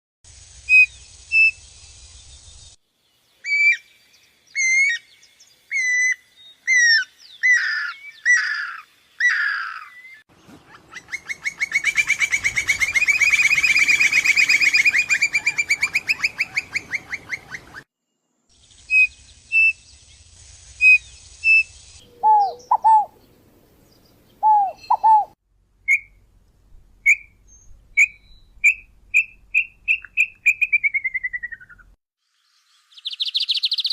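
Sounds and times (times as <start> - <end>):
bird whistled chirps: 18.8 - 19.8, 20.8 - 23.1, 24.4 - 25.3, 25.9 - 26.2, 27.0 - 31.9, 32.9 - 33.9.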